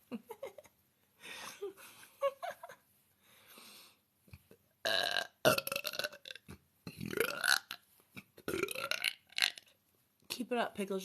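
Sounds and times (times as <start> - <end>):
woman belching loudly: 4.9 - 6.4, 7.1 - 7.8, 8.5 - 9.6.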